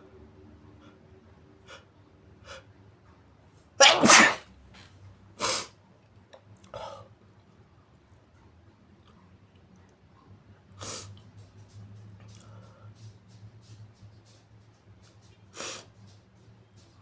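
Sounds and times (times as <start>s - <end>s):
person sneezing: 3.8s - 4.4s
person sniffing: 3.8s - 4.4s.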